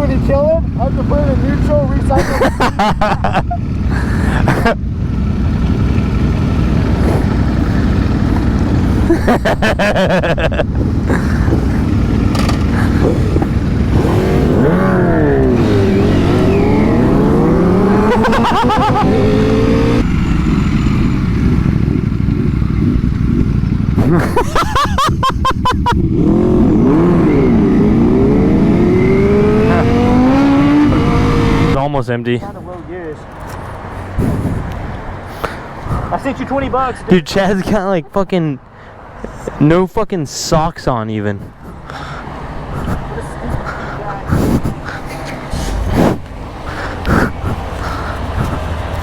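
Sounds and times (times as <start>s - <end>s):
motorcycle engine running: 0.0s - 31.8s, 43.8s - 49.0s
wind rush on microphone: 10.3s - 15.9s, 34.0s - 36.1s, 44.3s - 49.0s.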